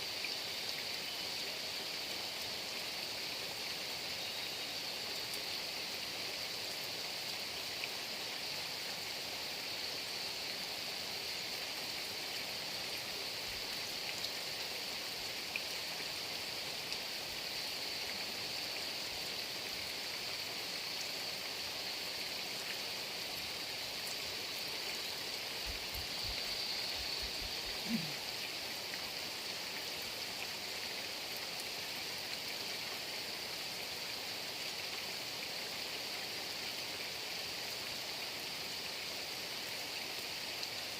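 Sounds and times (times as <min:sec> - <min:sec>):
heavy rain: 0:10.2 - 0:40.9.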